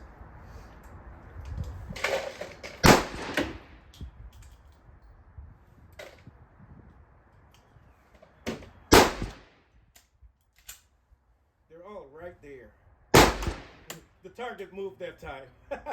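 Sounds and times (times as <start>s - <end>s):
sharp cracks: 2.0s - 4.0s, 8.9s - 9.7s, 13.2s - 14.1s
loud handgun shots: 2.8s - 3.8s, 8.9s - 9.5s, 13.2s - 14.0s.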